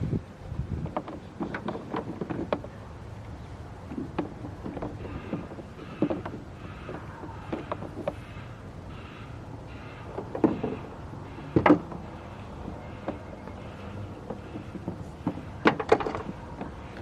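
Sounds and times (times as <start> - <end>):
steady low rumble: 0.0 - 1.4
parts clicking and knocking: 0.8 - 17.0.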